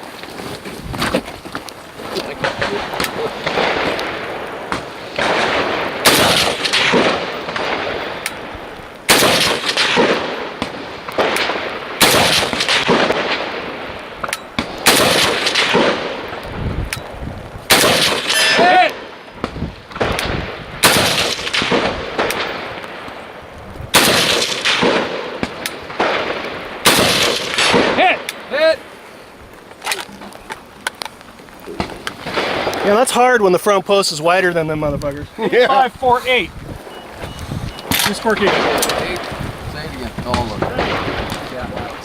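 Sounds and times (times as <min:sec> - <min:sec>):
rifle shots with echo: 0:02.4 - 0:08.5, 0:09.1 - 0:16.4, 0:17.7 - 0:23.1, 0:23.9 - 0:28.6, 0:31.8 - 0:33.0, 0:37.8 - 0:39.3, 0:40.3 - 0:42.0.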